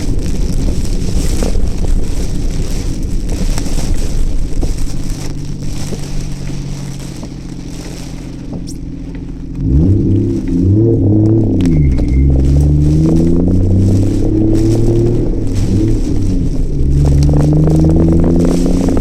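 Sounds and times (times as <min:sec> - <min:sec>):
car engine hum: 0:00.0 - 0:19.0
rain and wind rushing: 0:00.0 - 0:19.0
road rumble: 0:00.0 - 0:19.0.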